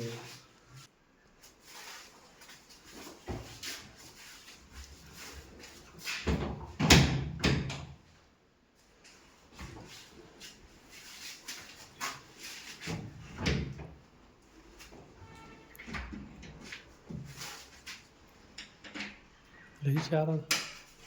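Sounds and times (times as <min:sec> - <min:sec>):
wardrobe doors opening and shutting: 0:06.2 - 0:08.0.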